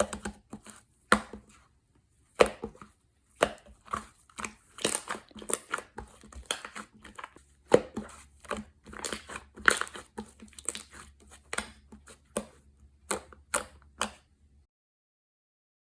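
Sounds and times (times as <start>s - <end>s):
slime squished by hand: 2.3s - 14.2s.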